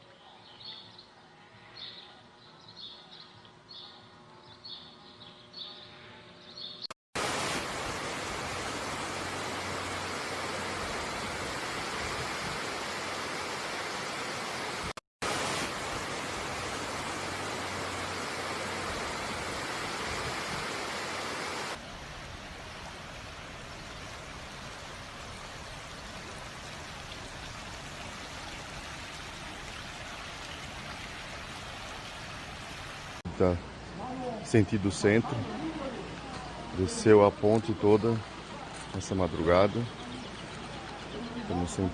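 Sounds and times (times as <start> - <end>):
river rushing: 7.2 - 26.4.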